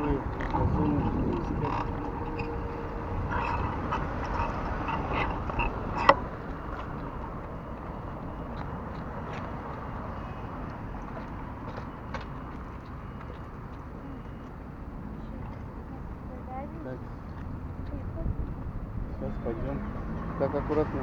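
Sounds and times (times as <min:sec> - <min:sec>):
bicycle saddle creaking: 0:00.0 - 0:09.5
wind and road noise: 0:00.0 - 0:21.0.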